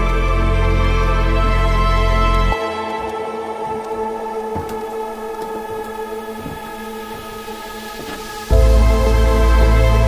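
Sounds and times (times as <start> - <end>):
new-age background music: 0.0 - 10.0
deep bass layer: 8.5 - 10.0.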